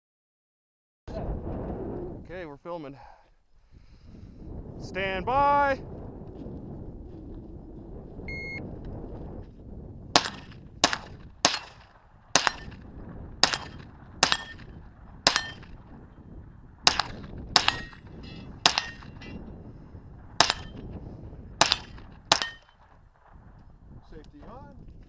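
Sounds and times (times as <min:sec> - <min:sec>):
shot timer beep: 0:08.3 - 0:08.6
gunshots: 0:10.2 - 0:15.9, 0:16.8 - 0:19.4, 0:20.3 - 0:20.8, 0:21.6 - 0:23.4.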